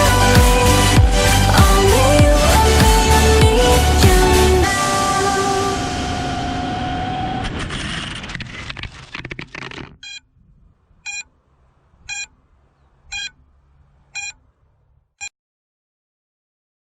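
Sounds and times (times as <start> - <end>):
loud rushing crackling: 4.8 - 14.6
short high electronic beeps: 10.0 - 10.2, 11.1 - 11.3, 12.1 - 12.3, 13.1 - 13.4, 14.2 - 14.4.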